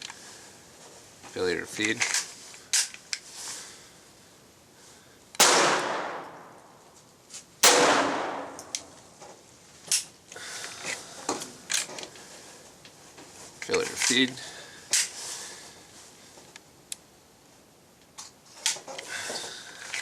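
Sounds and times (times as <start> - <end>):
pistol handling clicks: 5.4 - 6.7, 7.6 - 9.0
pistol shots echoing: 5.4 - 6.8, 7.6 - 9.0.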